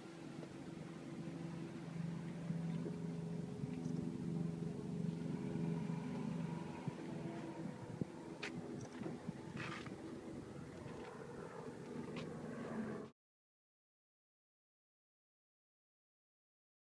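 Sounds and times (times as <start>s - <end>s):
engine humming: 0.0s - 13.1s.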